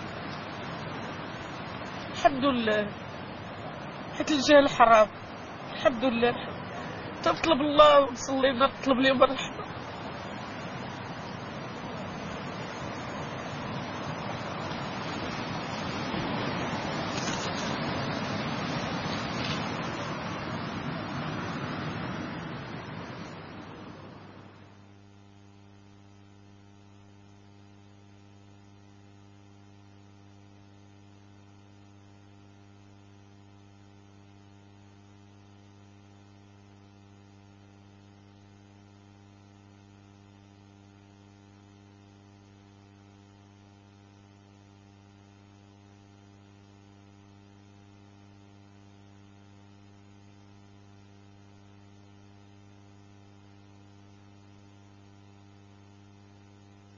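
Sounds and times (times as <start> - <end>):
noisy rush: 0.0 - 25.1
electrical mains hum: 0.0 - 56.9.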